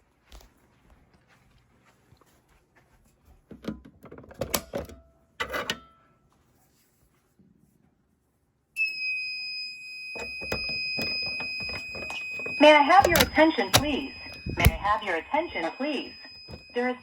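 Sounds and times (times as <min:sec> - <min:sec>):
fire alarm high-pitched tone: 0:08.8 - 0:17.0.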